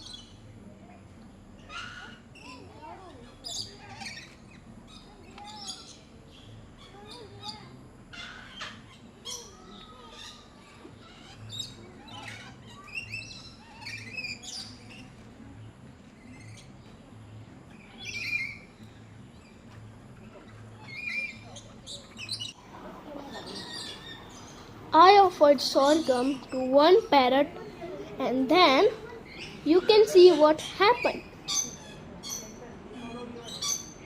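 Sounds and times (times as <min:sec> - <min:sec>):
parrots squawking: 0:01.6 - 0:02.6, 0:08.1 - 0:15.0, 0:20.3 - 0:22.6, 0:23.2 - 0:24.8, 0:25.8 - 0:34.0.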